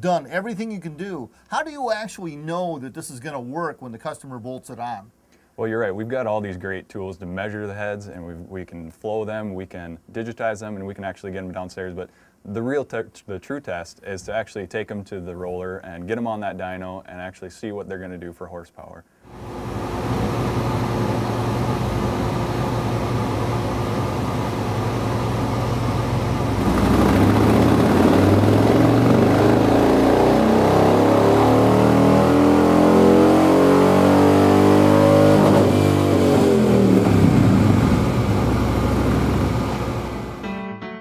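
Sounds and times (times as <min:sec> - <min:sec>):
motorcycle engine revving: 0:26.4 - 0:40.4.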